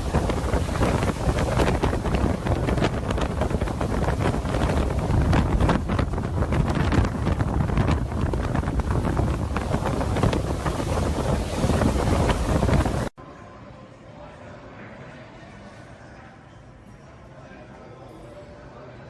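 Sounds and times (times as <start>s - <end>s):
wind buffeting microphone: 0.0s - 13.1s.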